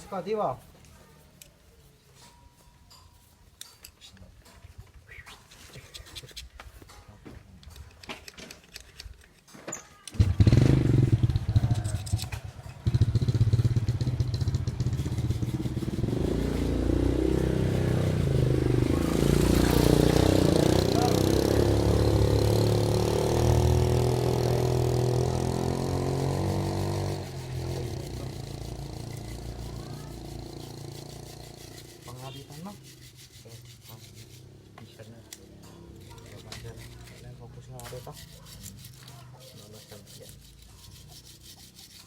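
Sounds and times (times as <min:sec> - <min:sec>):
motorcycle engine starting and revving: 0:10.1 - 0:33.0.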